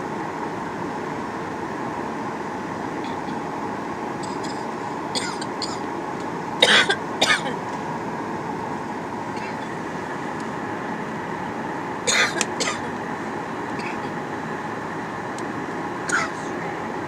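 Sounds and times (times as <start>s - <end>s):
faint steady tone: 0.0s - 7.2s
airplane engines humming: 0.0s - 17.0s.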